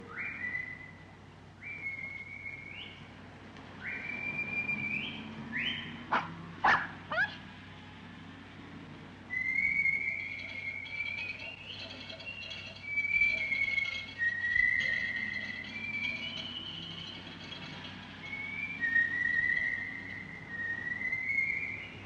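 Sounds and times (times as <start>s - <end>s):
low city hum: 0.0s - 22.0s
dog barking: 6.1s - 7.4s.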